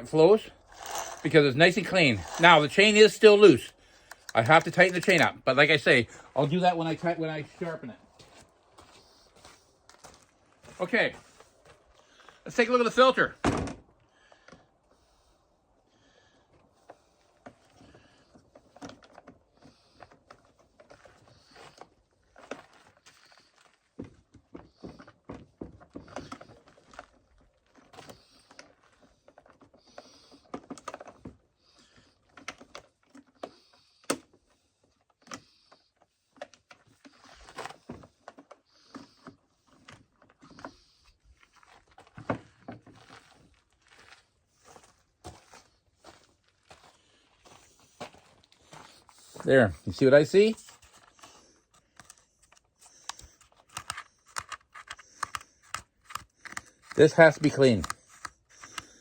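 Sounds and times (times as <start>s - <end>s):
hands clicking and rattling on chainsaw: 0.7s - 5.5s, 50.1s - 59.0s.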